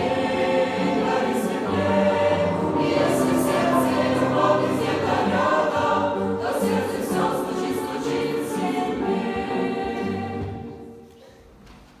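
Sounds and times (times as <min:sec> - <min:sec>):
choir singing: 0:00.0 - 0:11.1.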